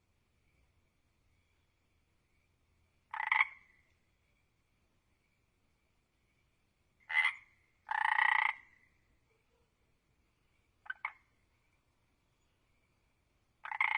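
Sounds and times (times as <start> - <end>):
faint steady high tone: 0.1 - 2.9
frog croaking: 3.1 - 3.8, 7.0 - 9.0, 10.8 - 11.4, 13.6 - 13.9.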